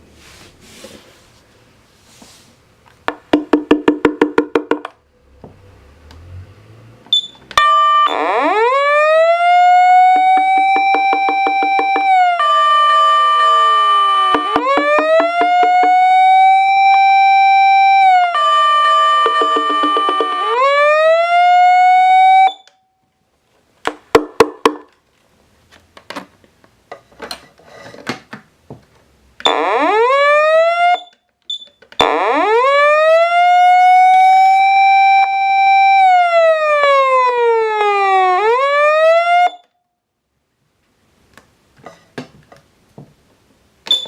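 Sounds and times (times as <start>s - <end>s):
electronic fire engine siren: 7.5s - 22.8s, 29.4s - 31.2s, 32.0s - 39.8s.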